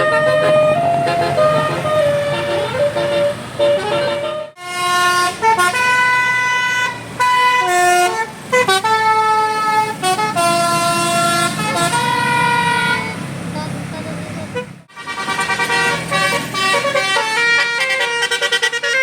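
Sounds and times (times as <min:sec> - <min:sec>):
bus horn playing a tune: 0:00.0 - 0:19.0.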